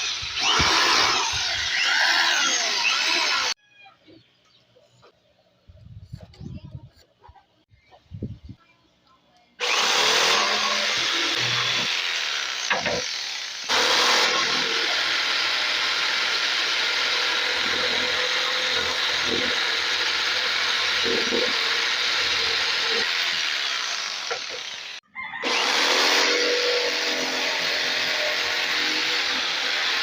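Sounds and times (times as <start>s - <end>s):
jigsaw cutting wood: 0.0s - 3.6s, 9.6s - 30.0s.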